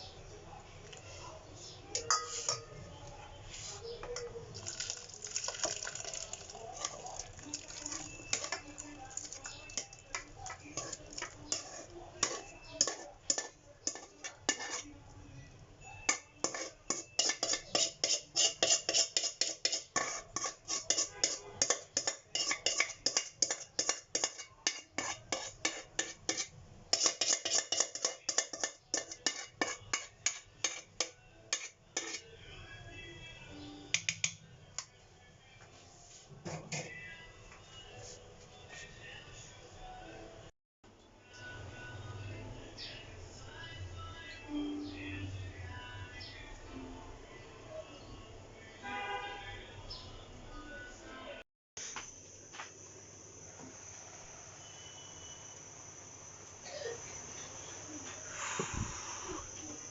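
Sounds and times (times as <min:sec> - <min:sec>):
utensil clinking against cookware: 0:01.9 - 0:02.8, 0:04.0 - 0:14.9, 0:16.0 - 0:32.3, 0:33.9 - 0:34.9.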